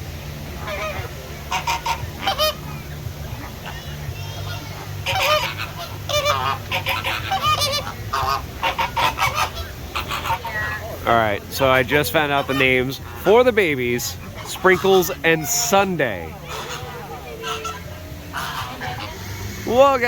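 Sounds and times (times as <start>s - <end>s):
flamingos honking: 0.0s - 20.0s
steady low hum: 0.0s - 20.0s.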